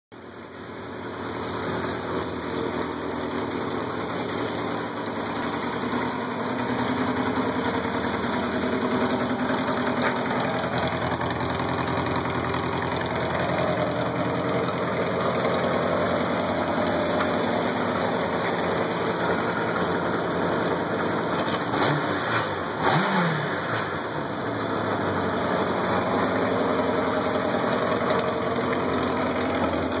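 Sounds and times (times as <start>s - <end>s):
motorcycle engine idling: 0.2s - 30.0s.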